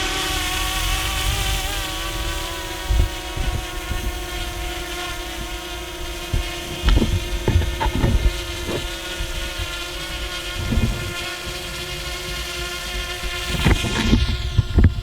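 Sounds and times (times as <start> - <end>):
drone propellers whirring: 0.0 - 15.0
wind buffeting microphone: 0.0 - 15.0.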